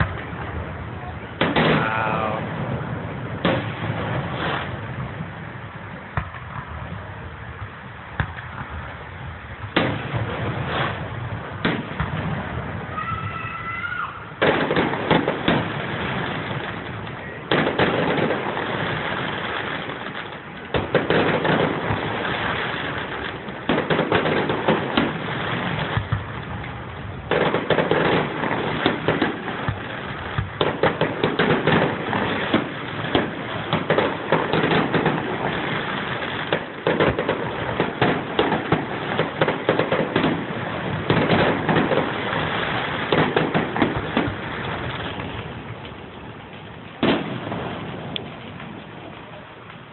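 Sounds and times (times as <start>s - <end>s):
firework whistling: 0.0s - 6.2s, 8.4s - 49.9s
fireworks banging: 0.0s - 49.9s
fireworks crackling: 0.0s - 49.9s.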